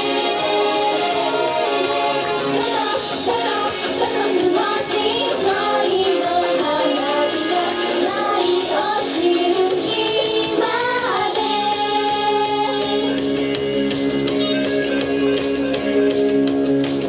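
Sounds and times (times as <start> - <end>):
pop backing track: 0.0 - 17.0
woman singing: 2.6 - 13.2.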